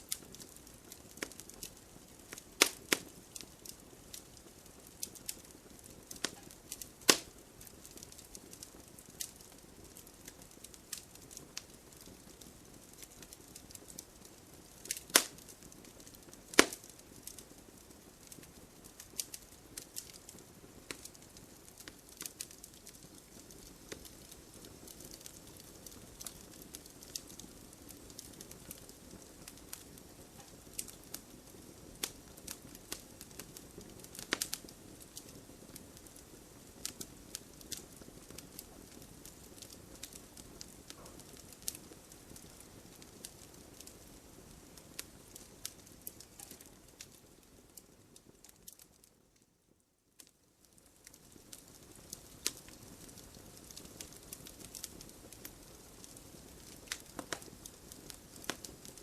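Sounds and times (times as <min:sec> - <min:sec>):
faint low hiss: 0:00.0 - 0:59.0
wood fire crackling: 0:00.0 - 0:59.0.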